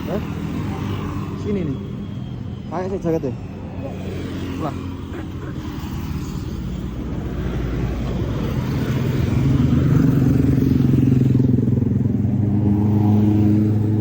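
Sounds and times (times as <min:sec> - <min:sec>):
motorcycle engine running: 0:08.2 - 0:14.0.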